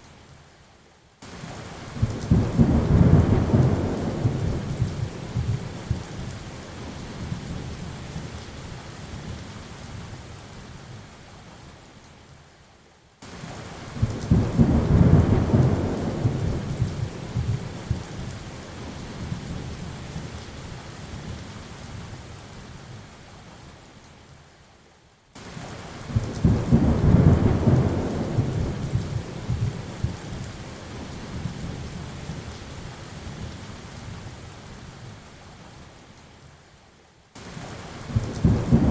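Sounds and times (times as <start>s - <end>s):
rolling thunder: 14.1s - 18.1s, 26.1s - 30.4s, 38.1s - 38.9s
heavy rain hissing: 37.4s - 38.9s.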